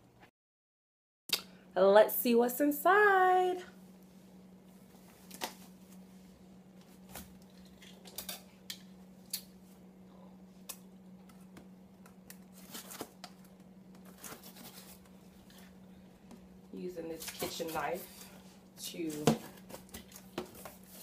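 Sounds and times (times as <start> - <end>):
low electrical hum: 1.3 - 21.0
cardboard packaging rustling: 12.3 - 15.8.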